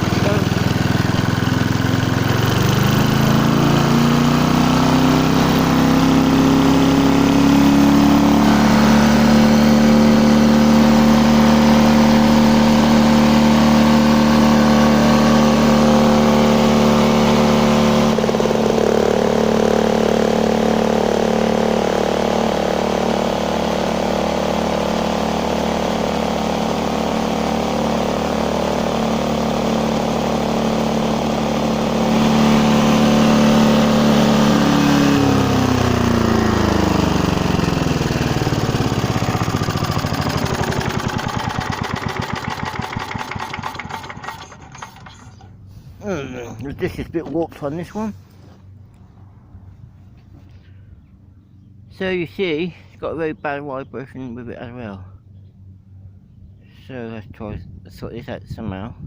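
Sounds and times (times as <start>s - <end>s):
lawn mower engine running at high speed: 0.0s - 46.2s.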